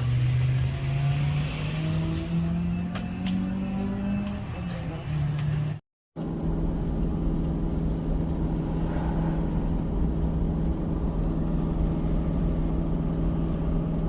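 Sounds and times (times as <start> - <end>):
off-road vehicle engine running: 0.0 - 14.0.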